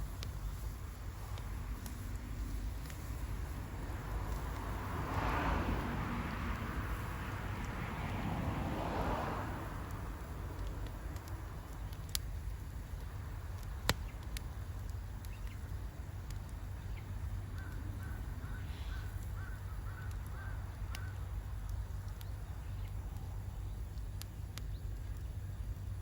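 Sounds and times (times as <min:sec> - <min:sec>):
campfire crackling and popping: 0:00.0 - 0:26.0
bird calling: 0:16.8 - 0:21.3.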